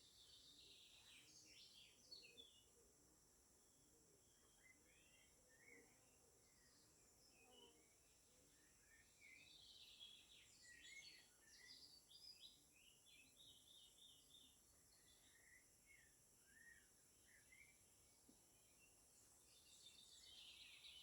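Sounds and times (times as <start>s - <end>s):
small birds chirping: 4.2s - 21.0s.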